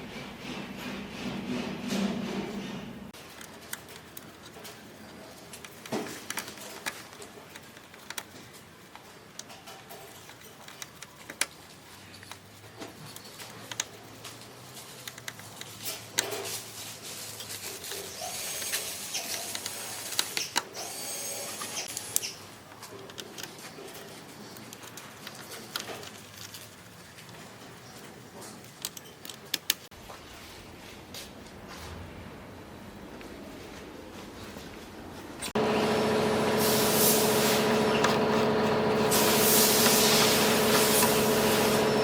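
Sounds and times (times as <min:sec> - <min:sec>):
clicks and knocks of parts: 0:03.2 - 0:16.7, 0:17.3 - 0:20.8, 0:21.6 - 0:29.9.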